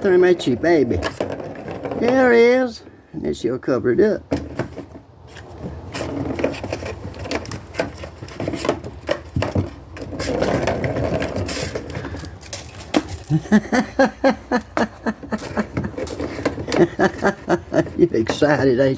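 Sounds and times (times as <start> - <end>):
kitten scratching in litter: 5.2 - 13.5.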